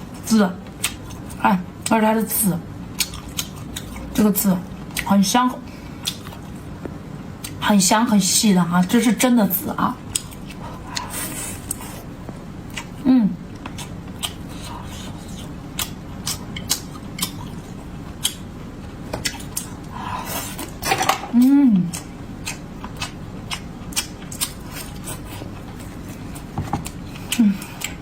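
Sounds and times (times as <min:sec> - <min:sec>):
person humming mm: 0:21.4 - 0:22.0.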